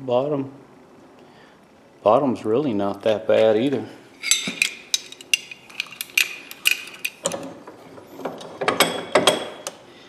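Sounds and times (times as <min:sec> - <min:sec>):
metal pliers clicking and clinking: 0:04.2 - 0:07.4.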